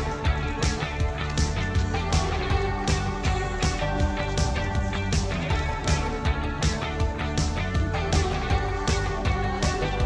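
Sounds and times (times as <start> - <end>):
rock music with guitar and drums: 0.0 - 10.0.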